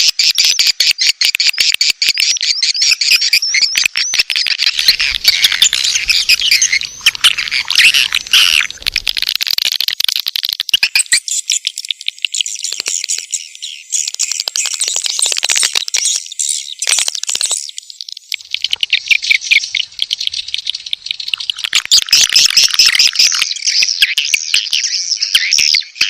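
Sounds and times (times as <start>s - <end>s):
swiftlets chattering and chirping: 4.6s - 17.8s, 18.4s - 23.9s.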